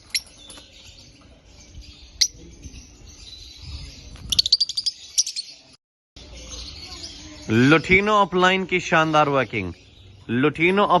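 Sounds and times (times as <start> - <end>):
birds chirping high: 0.0 - 11.0.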